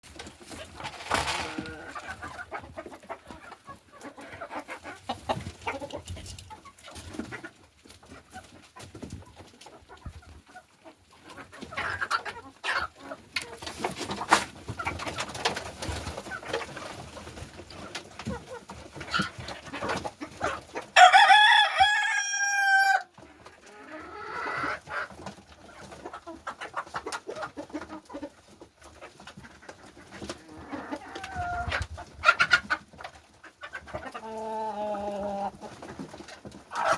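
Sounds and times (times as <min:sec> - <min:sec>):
chickens clucking: 0:00.0 - 0:36.9
rooster crowing: 0:21.0 - 0:23.1.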